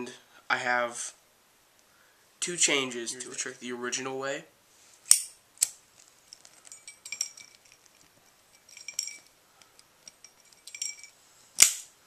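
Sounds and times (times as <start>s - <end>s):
lighter metallic clinks and rattles: 5.1s - 11.8s.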